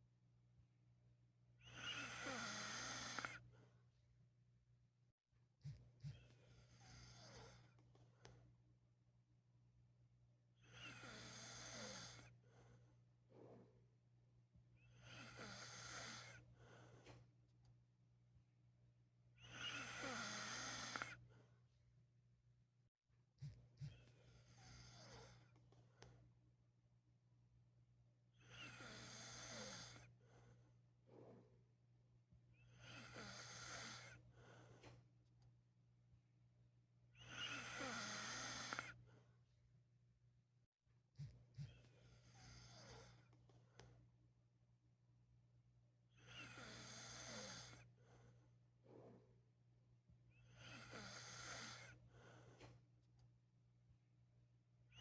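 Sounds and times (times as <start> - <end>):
man snoring: 1.8 - 3.3, 19.5 - 21.1, 37.4 - 38.9, 46.4 - 47.8, 50.6 - 51.9
soft breaths: 5.6 - 8.6, 14.8 - 17.8, 32.5 - 35.3, 46.1 - 49.6, 50.3 - 53.0.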